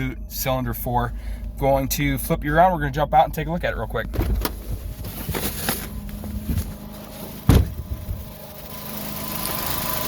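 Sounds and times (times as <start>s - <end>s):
car door thump: 4.1s - 4.6s, 7.4s - 7.9s.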